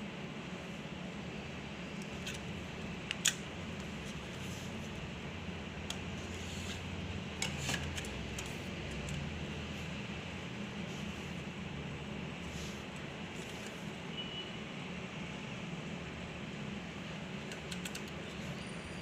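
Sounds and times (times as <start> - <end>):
cooling fans humming: 0.0 - 19.0.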